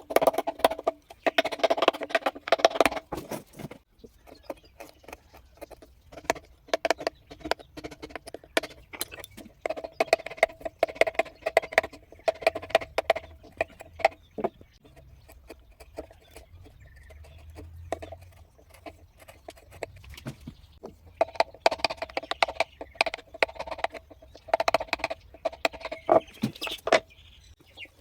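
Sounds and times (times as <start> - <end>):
chisel cutting wood: 12.4 - 20.4.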